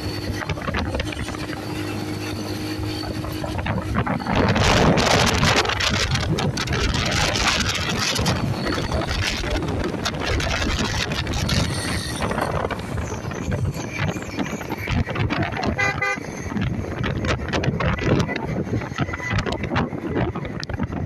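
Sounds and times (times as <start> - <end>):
road traffic noise: 0.0 - 21.0
wind buffeting microphone: 0.0 - 21.0
vehicle horn toot: 15.6 - 16.3.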